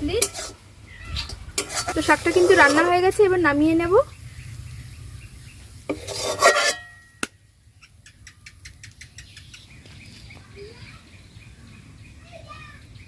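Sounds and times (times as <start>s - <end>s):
metal spoon scraping a pan: 0.0s - 0.6s, 1.2s - 3.4s, 5.8s - 7.3s.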